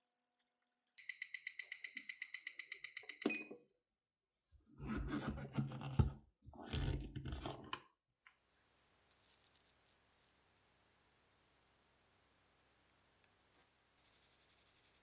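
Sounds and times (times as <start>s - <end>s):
mechanical watch ticking fast: 0.0s - 3.2s.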